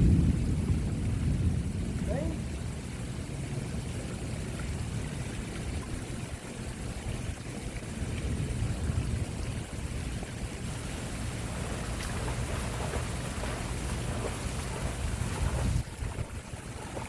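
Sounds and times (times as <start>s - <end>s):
low rumble: 0.0s - 3.3s
water rushing: 0.0s - 17.0s.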